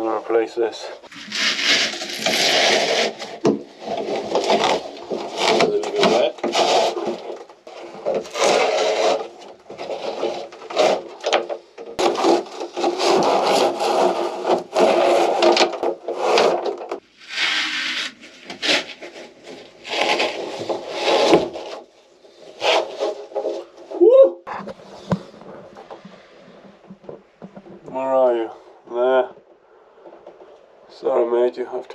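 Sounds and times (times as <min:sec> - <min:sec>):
carpet tearing: 0:01.1 - 0:24.0.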